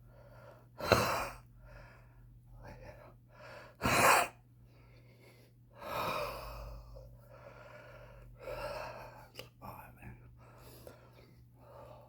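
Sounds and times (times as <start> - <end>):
man breathing heavily: 4.7 - 9.1.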